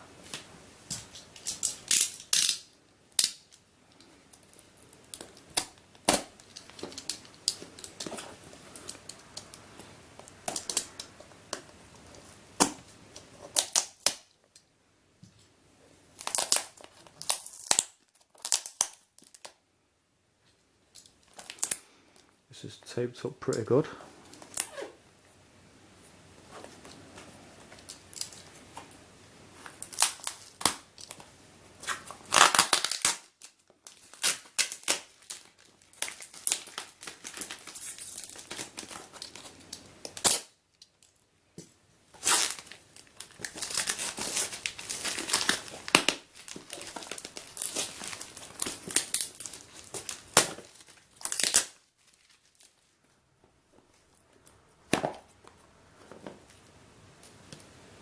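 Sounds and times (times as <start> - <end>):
packing tape tearing: 0.9 - 3.6, 4.4 - 9.6, 12.6 - 14.3, 16.2 - 19.6, 29.6 - 40.6, 42.2 - 52.8.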